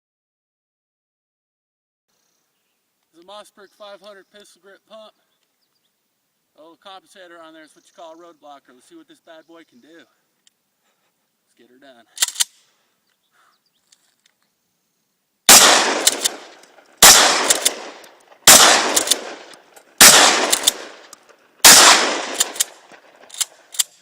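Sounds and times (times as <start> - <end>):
shotgun shots with echo: 15.5 - 23.7.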